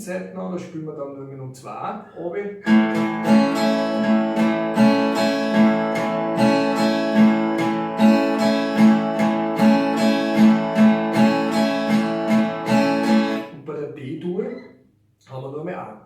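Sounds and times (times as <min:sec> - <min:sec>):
acoustic guitar strumming: 0:02.6 - 0:13.6.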